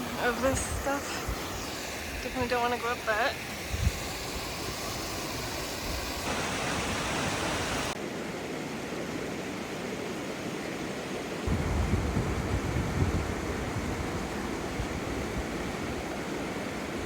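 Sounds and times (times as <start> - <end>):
waterfall rushing water: 0.0 - 8.0
low rumble: 11.5 - 16.0.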